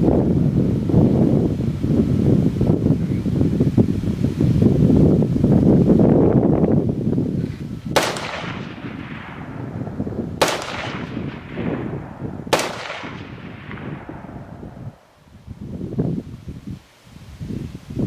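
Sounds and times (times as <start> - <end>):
wind noise on microphone: 0.0 - 18.0
rifle shots echoing: 8.0 - 15.0.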